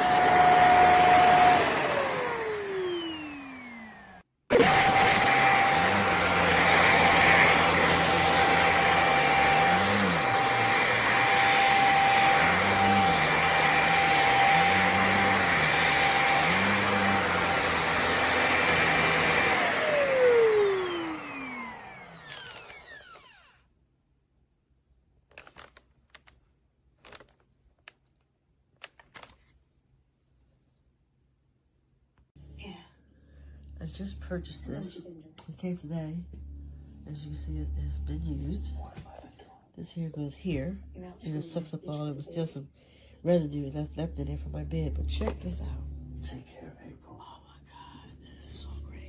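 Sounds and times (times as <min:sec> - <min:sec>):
vacuum cleaner whining: 0:00.0 - 0:23.7, 0:33.6 - 0:46.6.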